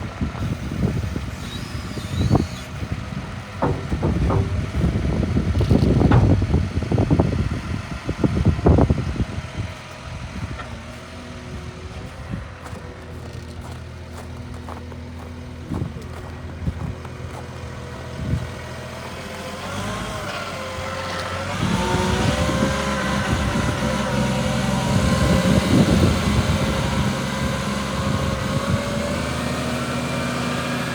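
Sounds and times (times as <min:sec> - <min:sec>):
diesel engine running: 0:00.0 - 0:30.9
heavy clunks and knocks: 0:01.4 - 0:07.8.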